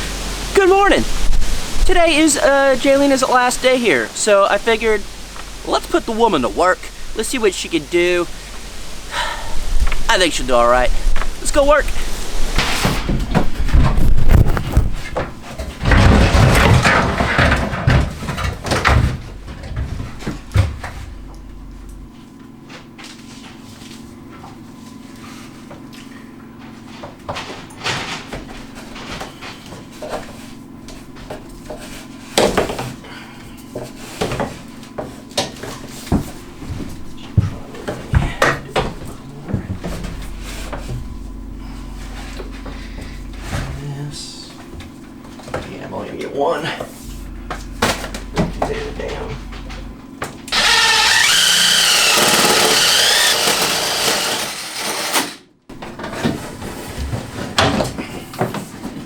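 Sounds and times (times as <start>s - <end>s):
steady low hum: 0.0s - 54.6s
objects knocking and clattering: 13.0s - 21.1s
power tool motor running: 50.5s - 55.4s.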